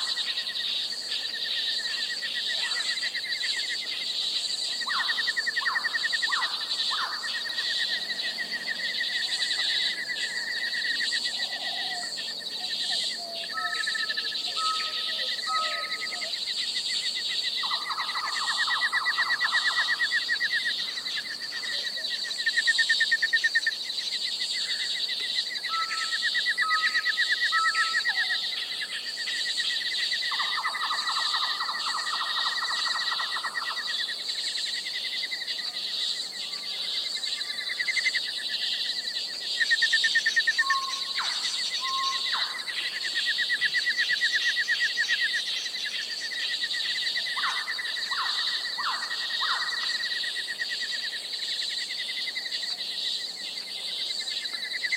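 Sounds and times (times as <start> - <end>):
insects trilling: 0.0 - 54.9
bird calls and whistles: 9.3 - 16.3, 40.5 - 42.7.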